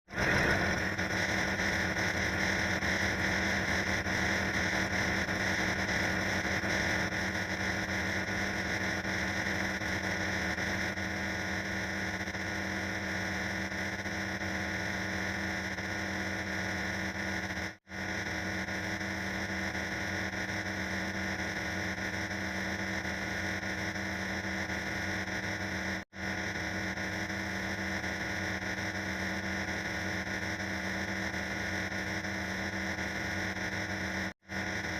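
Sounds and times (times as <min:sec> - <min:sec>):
harsh steady noise: 0:00.0 - 0:34.9
droning tones: 0:00.1 - 0:12.6.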